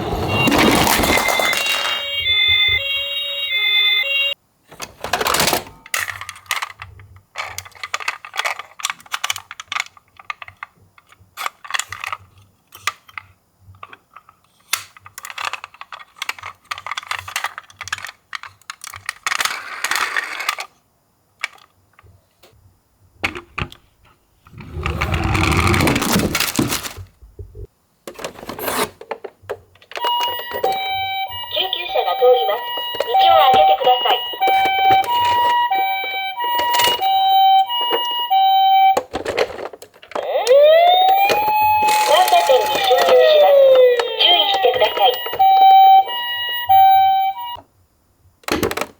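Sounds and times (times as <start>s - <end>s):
toy cars clattering down slope: 0.3s - 2.4s, 5.1s - 20.8s, 39.0s - 46.0s.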